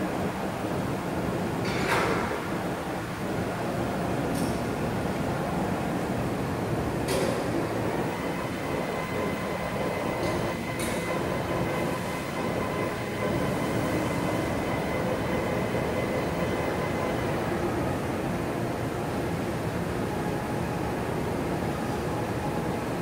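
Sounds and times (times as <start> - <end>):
industrial machinery rumbling: 7.6 - 18.0
faint high whine: 7.7 - 18.8.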